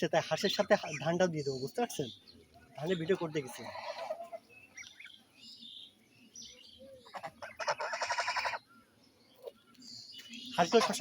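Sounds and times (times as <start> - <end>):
faint bird chirps: 0.4 - 11.0
goose call: 7.1 - 8.6, 10.6 - 11.0.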